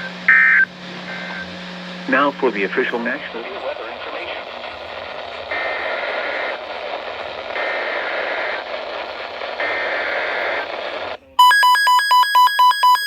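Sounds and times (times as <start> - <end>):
radio static hiss: 0.0 - 11.4
rapidly pulsing electronic alert beep: 11.4 - 13.0.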